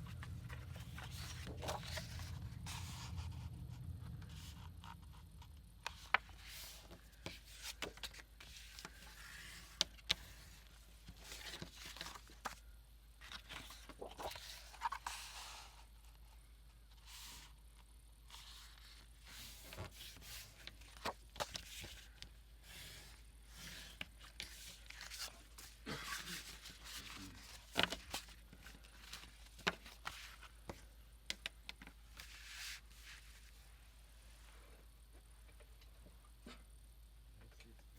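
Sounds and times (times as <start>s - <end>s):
paper rustling and scraping: 0.0s - 12.6s, 13.2s - 15.8s, 18.3s - 30.5s, 32.1s - 33.6s.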